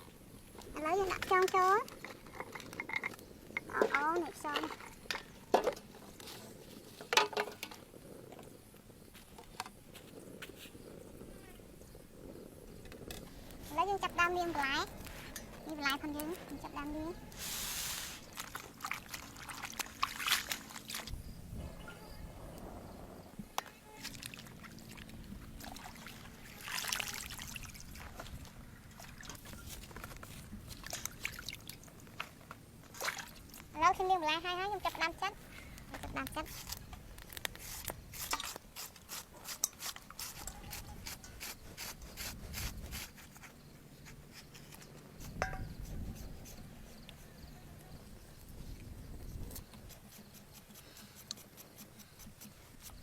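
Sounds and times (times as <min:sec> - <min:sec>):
water splashing and trickling: 0:15.8 - 0:21.2, 0:23.9 - 0:35.0.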